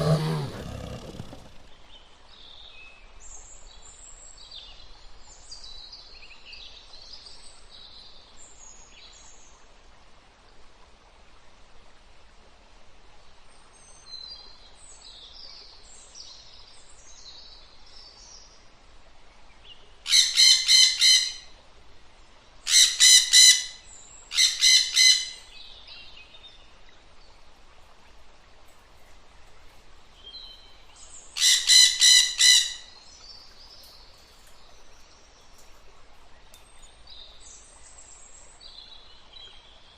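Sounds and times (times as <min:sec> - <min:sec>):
loud repeated bird calls: 0:00.0 - 0:01.6, 0:20.1 - 0:21.4, 0:22.7 - 0:25.5, 0:31.4 - 0:33.0.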